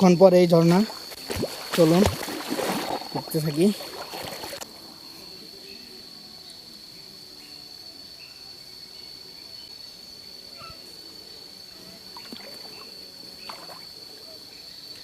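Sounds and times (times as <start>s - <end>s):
trickling stream water: 0.0s - 5.1s, 11.8s - 15.0s
high insect drone: 0.0s - 15.0s.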